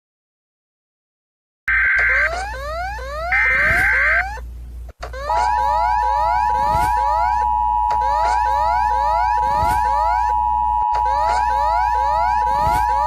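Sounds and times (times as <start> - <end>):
rising siren sweep: 5.2 - 13.0
two-tone attention signal: 5.4 - 13.0.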